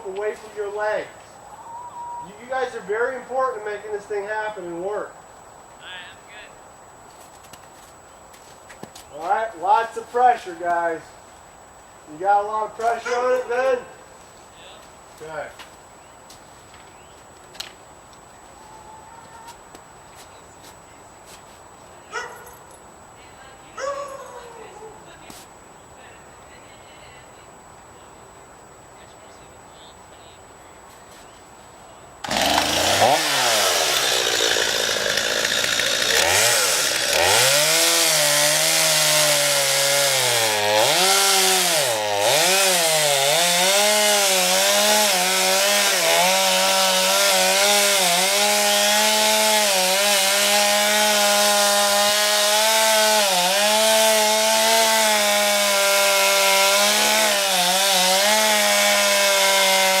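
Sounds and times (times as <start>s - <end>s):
chainsaw cutting tree trunk: 32.2s - 60.0s.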